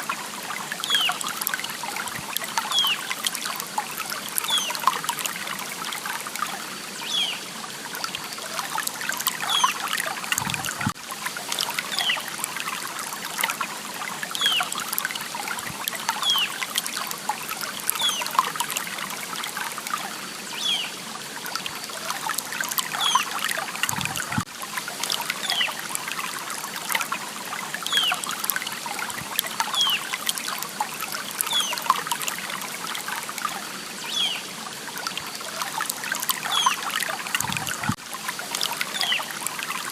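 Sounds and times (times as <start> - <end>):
stream water trickling: 0.0 - 39.9.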